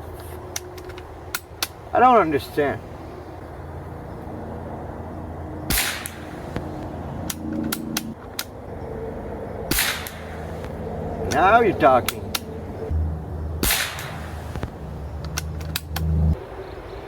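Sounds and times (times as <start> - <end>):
steady low hum: 0.0 - 17.0
air rifle shots: 5.7 - 8.6, 9.7 - 12.6, 13.6 - 16.2
light clicks: 6.0 - 8.6, 12.0 - 12.9, 13.6 - 16.3.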